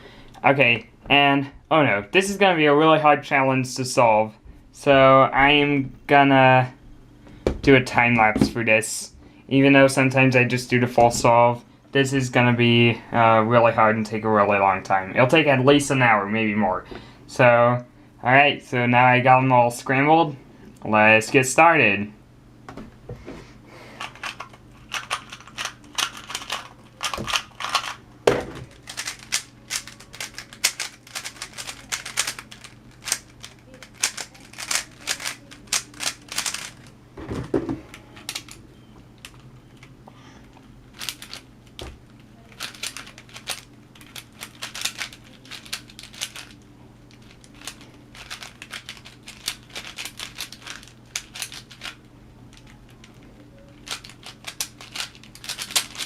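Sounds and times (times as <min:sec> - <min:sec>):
plastic cubes clicking: 0:28.7 - 0:36.9, 0:53.8 - 0:56.0.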